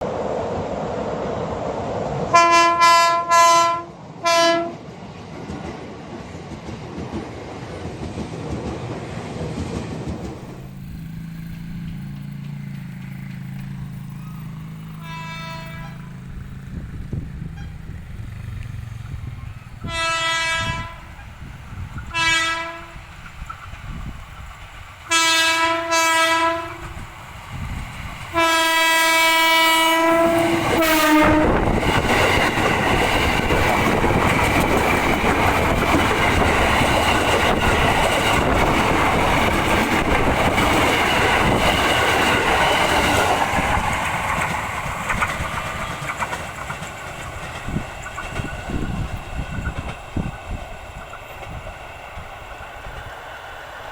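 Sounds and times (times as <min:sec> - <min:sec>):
train horn blasts: 0:02.3 - 0:04.8, 0:14.9 - 0:16.3, 0:17.4 - 0:18.0, 0:19.8 - 0:21.2, 0:22.1 - 0:23.1, 0:25.1 - 0:27.0, 0:28.4 - 0:31.8
train wheels clattering on rails: 0:04.6 - 0:53.9.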